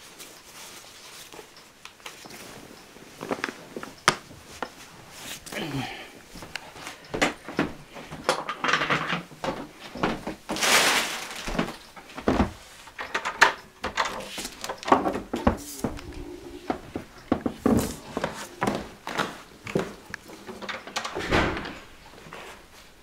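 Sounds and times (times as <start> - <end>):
rustling of things handled: 0.0 - 23.0
objects knocking and clunking: 6.4 - 22.5.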